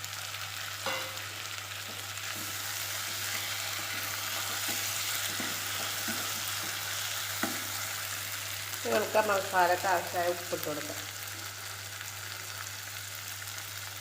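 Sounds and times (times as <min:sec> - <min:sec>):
food sizzling in oil: 0:00.0 - 0:14.0
spoon knocking against pan: 0:00.9 - 0:01.3.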